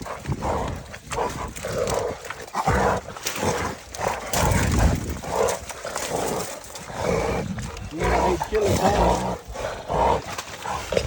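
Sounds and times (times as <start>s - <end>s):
low thumps and rumble: 4.2s - 5.7s.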